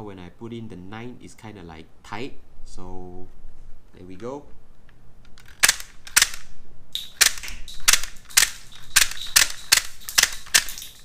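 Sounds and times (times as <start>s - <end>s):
toy gun plastic clacks: 5.4s - 6.4s, 7.0s - 11.0s.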